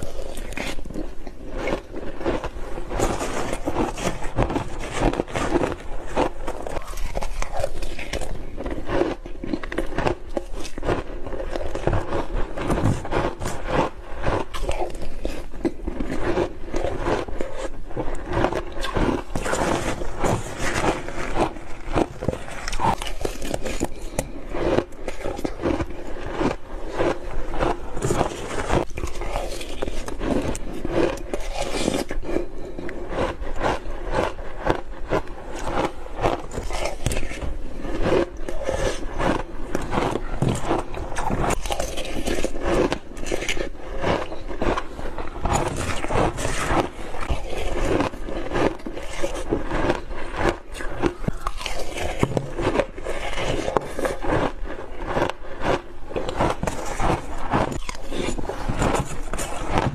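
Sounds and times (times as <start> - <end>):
crunchy ice being bitten: 0.0 - 59.9.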